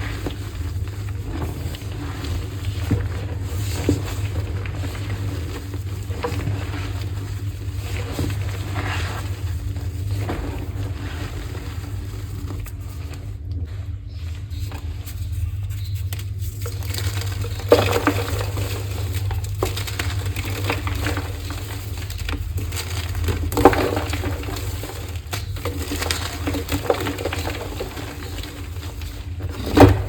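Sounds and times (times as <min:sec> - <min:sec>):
chalk block crunching: 0:14.5 - 0:30.0.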